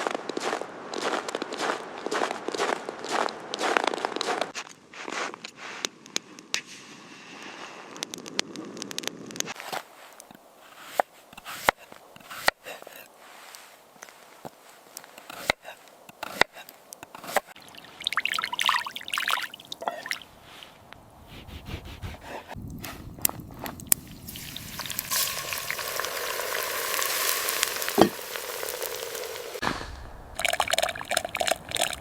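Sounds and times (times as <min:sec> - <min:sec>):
steady cooking hiss: 0:23.9 - 0:31.7.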